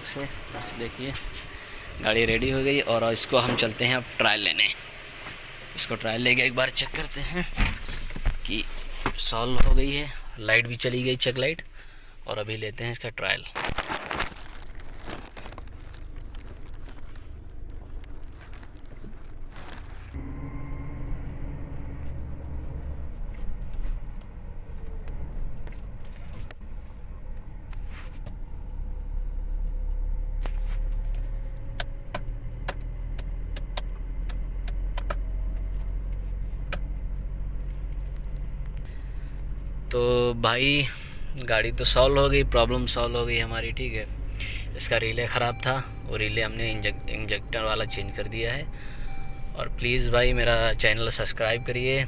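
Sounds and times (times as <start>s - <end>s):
car engine running: 0.0s - 10.4s, 14.4s - 52.0s.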